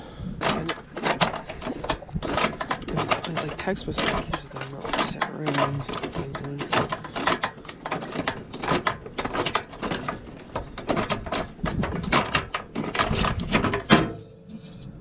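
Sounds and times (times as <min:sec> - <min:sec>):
metal tools clicking and clanking: 0:00.4 - 0:14.2.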